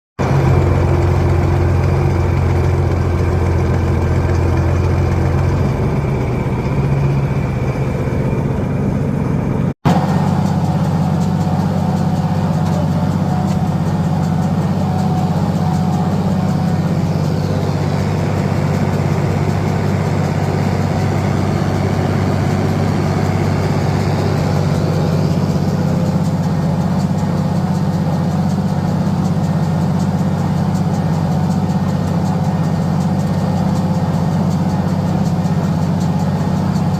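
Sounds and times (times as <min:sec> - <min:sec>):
tractor engine under load: 0:00.2 - 0:36.9.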